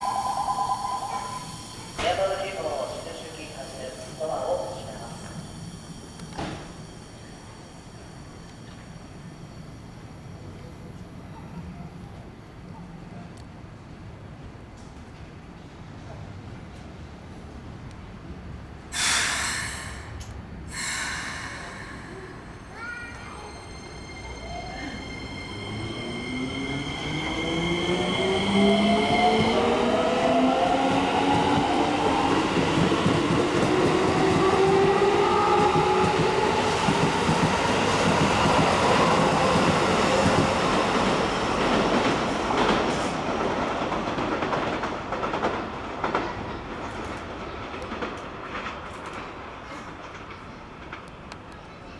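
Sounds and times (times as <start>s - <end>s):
high inverter tones: 0.0s - 2.1s.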